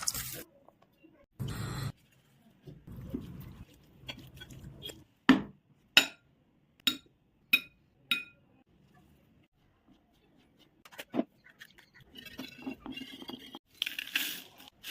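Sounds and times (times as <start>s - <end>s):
utensil scraping in a bowl: 9.9s - 14.9s.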